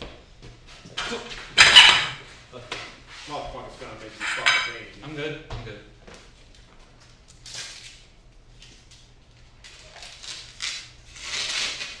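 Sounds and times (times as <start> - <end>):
rustling and scraping handling: 0.6 - 4.9.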